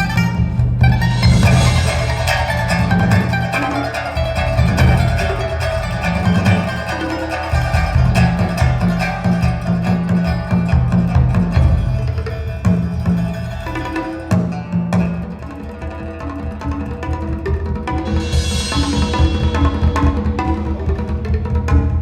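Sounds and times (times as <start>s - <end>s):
plucked string instrument: 0.0s - 22.0s.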